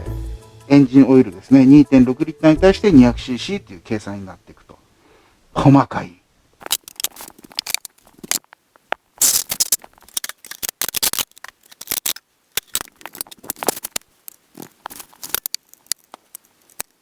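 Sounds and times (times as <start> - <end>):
objects scraping and rustling: 6.6 - 8.6, 9.2 - 16.9.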